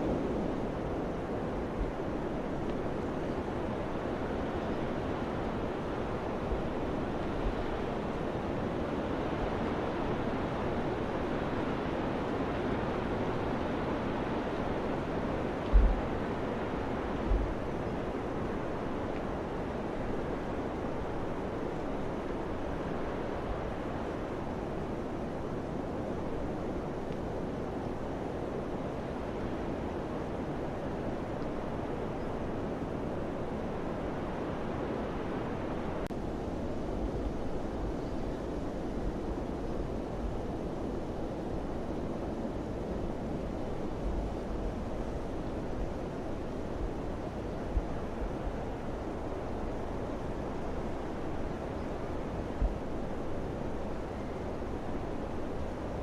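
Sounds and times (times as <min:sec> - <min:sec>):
steady rushing wind: 0:00.0 - 0:56.0
wind buffeting microphone: 0:14.8 - 0:18.8.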